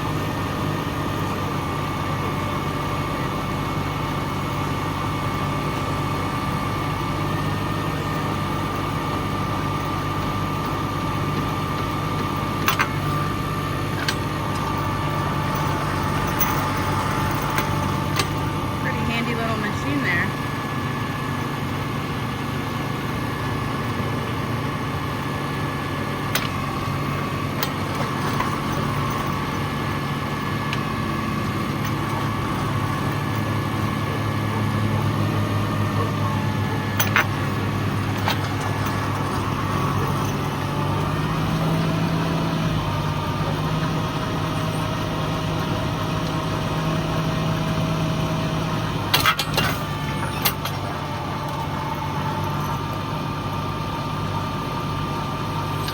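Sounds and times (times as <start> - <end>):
tractor engine running: 0.0 - 55.9.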